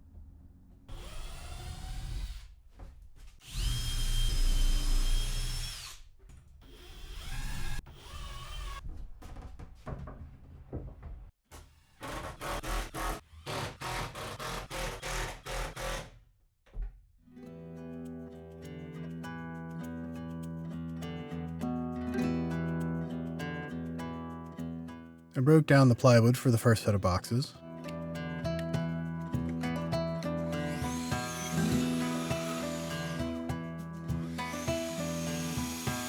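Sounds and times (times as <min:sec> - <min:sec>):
power drill whining: 0:00.9 - 0:02.5, 0:03.4 - 0:06.0, 0:30.4 - 0:36.0
acoustic guitar music: 0:17.3 - 0:36.0.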